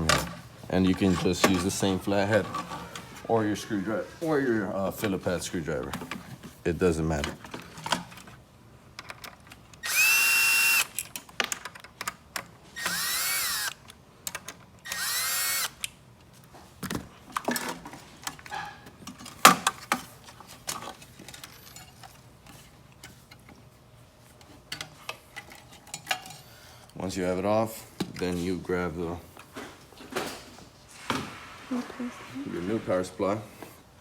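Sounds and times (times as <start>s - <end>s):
clicks of parts and screws: 9.0s - 16.0s
cordless drill whining: 9.8s - 11.0s, 12.8s - 13.8s, 14.8s - 15.8s.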